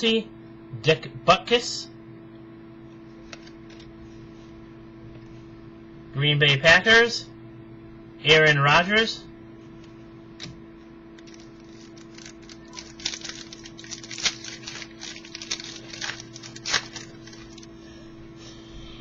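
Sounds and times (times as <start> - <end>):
electrical hum: 0.0 - 19.0
cards clicking and rustling: 3.3 - 3.9, 11.2 - 17.7.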